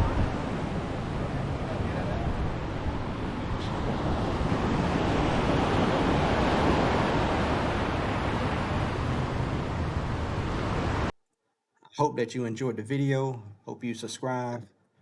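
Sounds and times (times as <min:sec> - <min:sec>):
sea surf washing on beach: 0:00.0 - 0:11.1
wind on microphone: 0:00.0 - 0:11.1.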